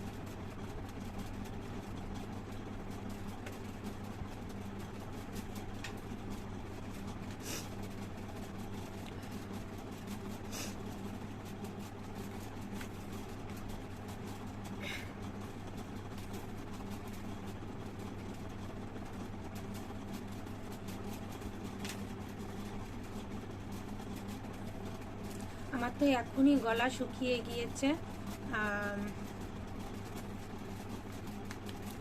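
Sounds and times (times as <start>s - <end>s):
low background hum: 0.0s - 32.0s.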